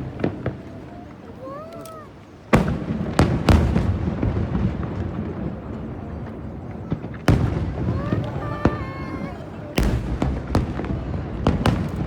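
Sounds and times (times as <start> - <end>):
firework shells booming: 2.5 - 12.0.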